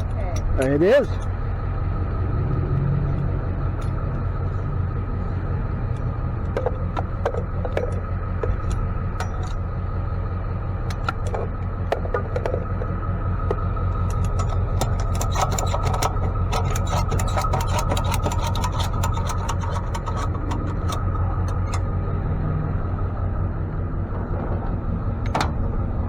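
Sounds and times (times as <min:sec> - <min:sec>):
vehicle engine running: 0:00.0 - 0:26.0
short clicks and rattles: 0:13.5 - 0:21.9.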